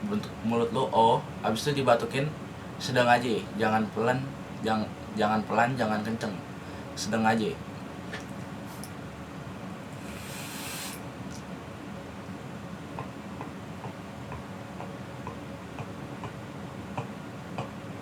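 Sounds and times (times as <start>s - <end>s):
steady low hum: 0.0s - 18.0s
airy hiss of vaping: 10.0s - 11.0s.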